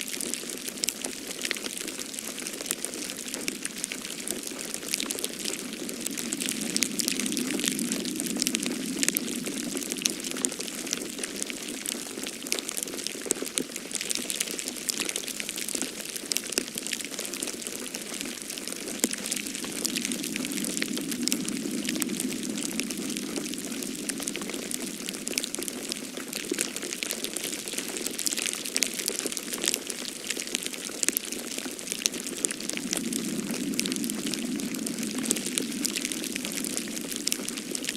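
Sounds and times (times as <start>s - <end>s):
snow patter of tiny ticks: 0.0s - 37.9s
soft low rushing hiss: 31.8s - 37.9s.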